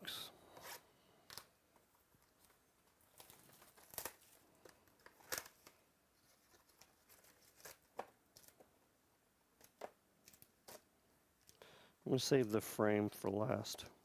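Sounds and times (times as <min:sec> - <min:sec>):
packaging tearing and crinkling: 0:03.1 - 0:08.6.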